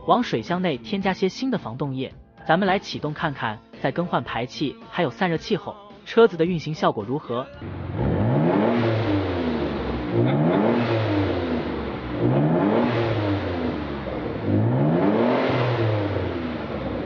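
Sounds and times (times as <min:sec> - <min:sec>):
car engine revving: 0:07.6 - 0:17.0.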